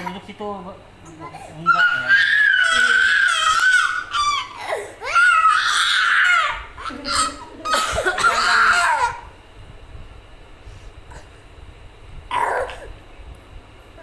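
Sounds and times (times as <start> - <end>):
small child squealing: 1.6 - 7.4, 8.3 - 9.2.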